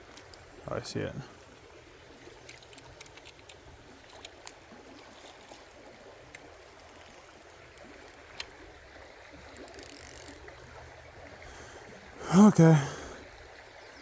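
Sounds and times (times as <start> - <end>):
creek water flowing: 0.0 - 14.0
small clicks: 2.2 - 5.1, 6.3 - 8.6, 9.5 - 10.4.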